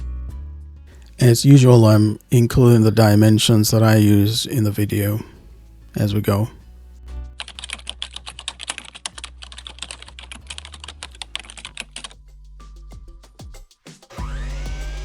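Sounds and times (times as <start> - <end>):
typing on computer keyboard: 7.4 - 12.2.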